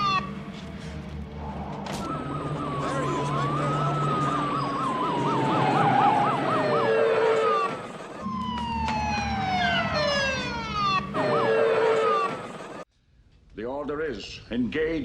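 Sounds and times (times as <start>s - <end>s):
emergency vehicle sirens wailing: 0.0s - 12.8s.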